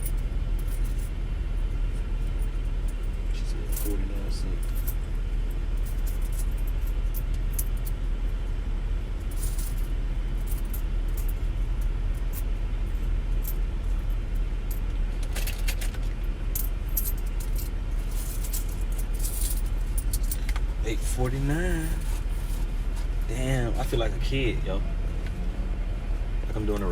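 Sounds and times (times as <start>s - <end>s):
car engine idling: 0.0s - 26.9s
metallic jingling and clicks: 14.7s - 20.6s.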